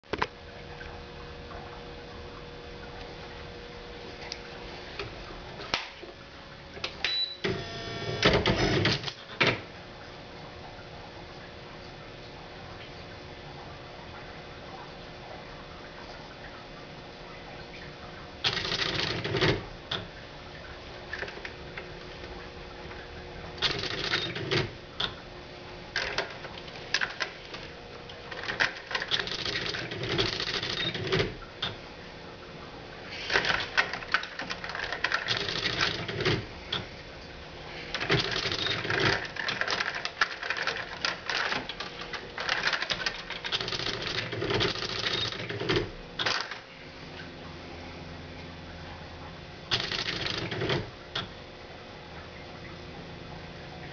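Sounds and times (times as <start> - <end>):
typewriter print mechanism striking: 7.1 - 9.6, 18.4 - 19.6, 23.6 - 24.8, 28.4 - 31.4, 33.3 - 36.4, 38.0 - 46.6, 49.7 - 50.9.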